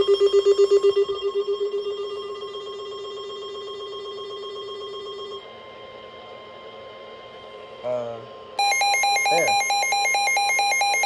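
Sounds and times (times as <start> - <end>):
electronic pulsing alert tone: 8.6 - 11.0.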